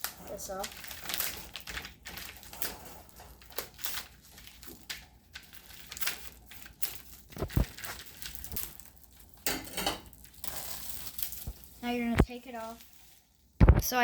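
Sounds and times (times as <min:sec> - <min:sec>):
scissors cutting plastic: 0:00.0 - 0:12.8
plastic wrapping crinkling and tearing: 0:00.0 - 0:14.0
sharp thump: 0:13.6 - 0:13.8.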